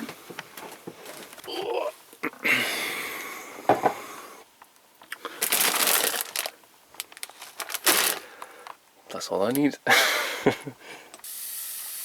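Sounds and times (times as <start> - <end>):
packaging crinkling: 5.2 - 8.8.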